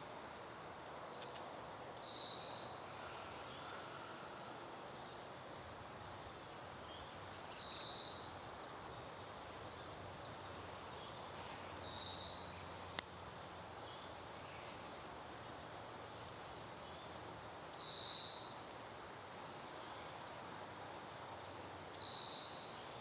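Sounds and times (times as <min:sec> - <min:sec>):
outdoor background hiss: 0:00.0 - 0:23.0
songbird singing: 0:09.8 - 0:13.0, 0:22.0 - 0:23.0.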